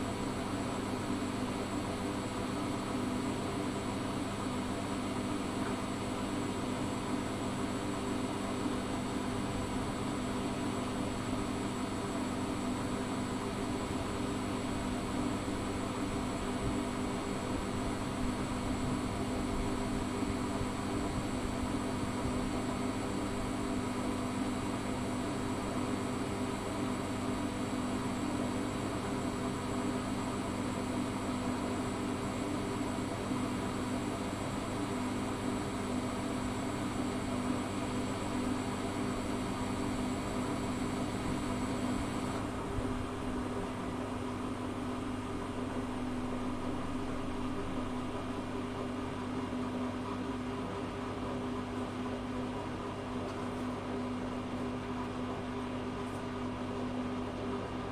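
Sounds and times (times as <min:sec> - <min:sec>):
washing machine humming: 0:00.0 - 0:57.9.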